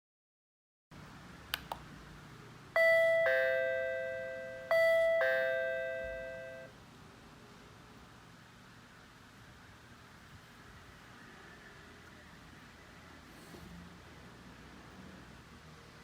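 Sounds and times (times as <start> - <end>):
short clicks: 1.5 - 1.9
doorbell chime ding-dong: 2.8 - 6.7.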